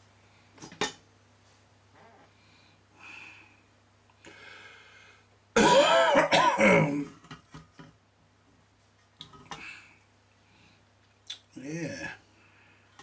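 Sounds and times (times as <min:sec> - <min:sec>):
low mains hum: 0:00.0 - 0:13.0
man clearing his throat: 0:05.6 - 0:07.1.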